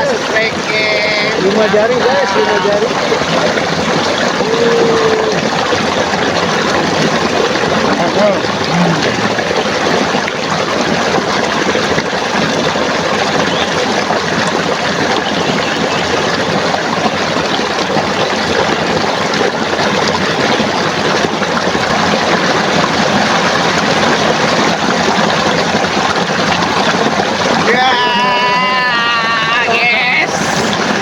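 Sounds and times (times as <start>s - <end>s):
stream water rushing: 0.0s - 31.0s.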